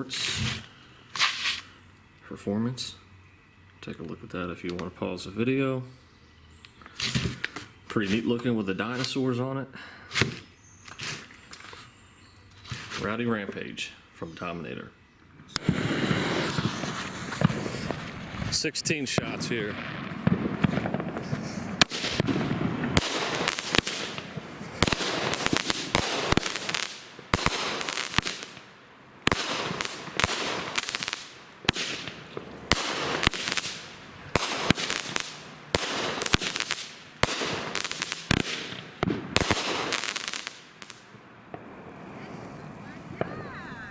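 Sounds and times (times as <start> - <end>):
firework shots banging: 0.0 - 1.6, 15.4 - 42.0
loud firework reports: 0.0 - 1.6, 2.2 - 6.0, 6.9 - 11.3, 12.6 - 43.9
hissing crackling tails: 0.0 - 9.4, 10.0 - 43.9.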